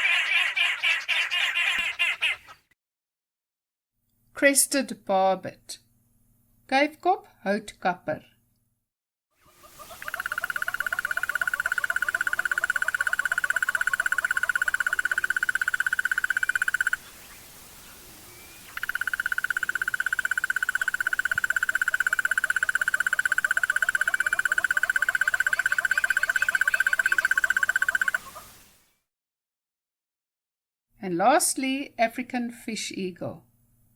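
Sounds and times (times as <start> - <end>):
bird trilling rattle: 9.9 - 17.0, 18.8 - 28.3.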